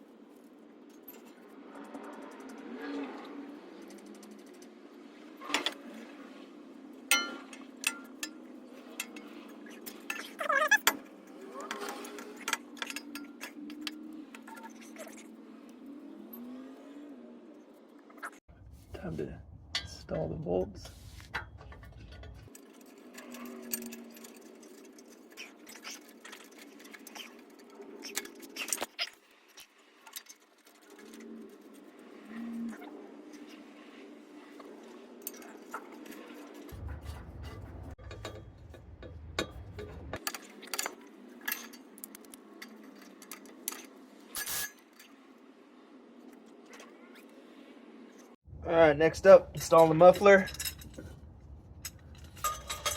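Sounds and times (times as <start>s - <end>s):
metal pipe clinks and knocks: 7.1s - 8.4s, 19.7s - 20.2s, 21.2s - 27.4s, 36.7s - 45.1s, 49.6s - 51.2s, 51.8s - 52.9s
metallic clicks of bolts and nuts: 21.3s - 31.2s, 38.0s - 45.1s, 51.8s - 52.9s.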